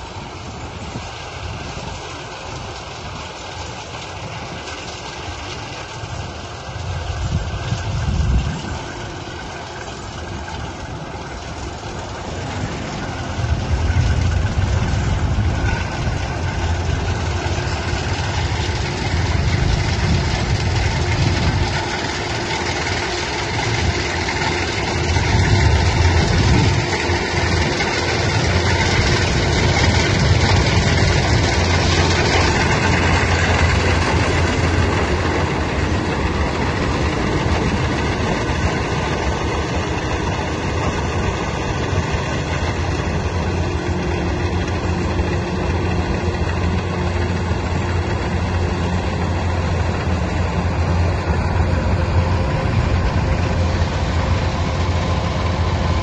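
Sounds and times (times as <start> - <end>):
heavy machine engine running: 0.0 - 56.0.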